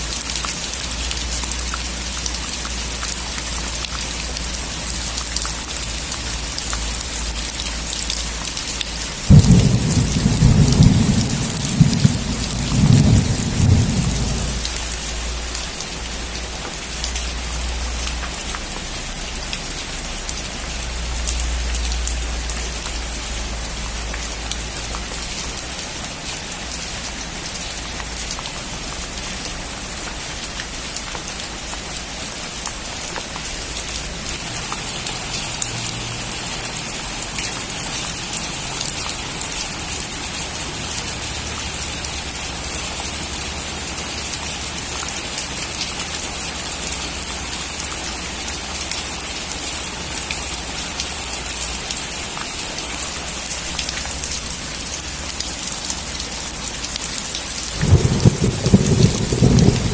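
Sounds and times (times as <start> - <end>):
heavy rain on a metal roof: 0.0 - 59.9
thunder rumbling: 9.3 - 14.8, 57.8 - 59.9.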